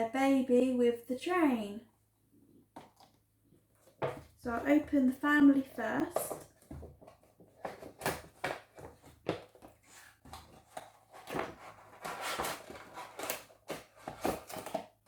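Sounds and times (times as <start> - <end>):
plastic packaging rustling: 5.8 - 15.0.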